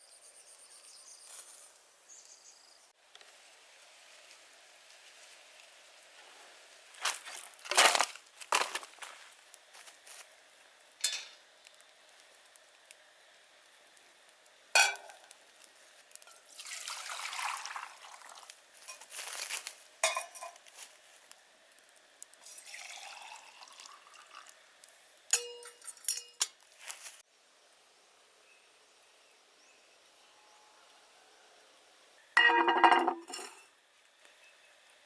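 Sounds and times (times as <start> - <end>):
glassware clinking: 14.8 - 15.1, 20.0 - 20.6, 25.4 - 26.5, 32.4 - 33.7
liquid pouring: 16.4 - 18.5, 22.4 - 24.6.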